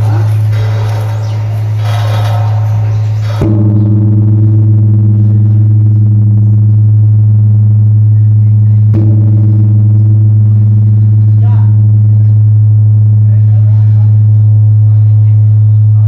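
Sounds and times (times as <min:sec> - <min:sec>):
large bell struck: 0:00.0 - 0:15.1
deep humming bell ring: 0:00.0 - 0:16.0.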